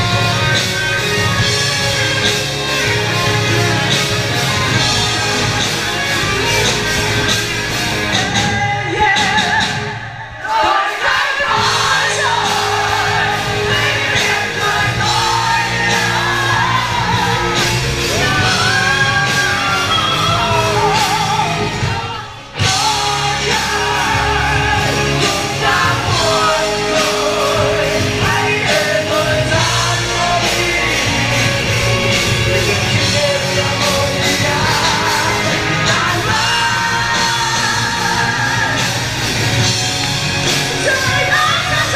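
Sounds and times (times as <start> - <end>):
live rock band: 0.0 - 41.9
male singer singing and shouting: 8.0 - 39.6, 40.4 - 41.9.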